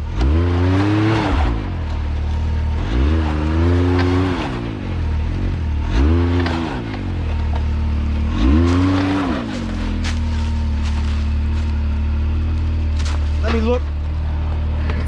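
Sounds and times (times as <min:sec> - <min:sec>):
engine revving: 0:00.0 - 0:15.0.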